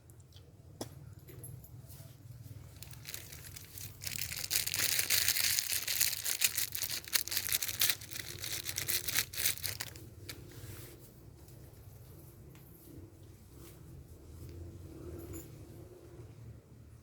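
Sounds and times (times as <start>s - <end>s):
crackling and crunching rustle: 1.8s - 11.7s.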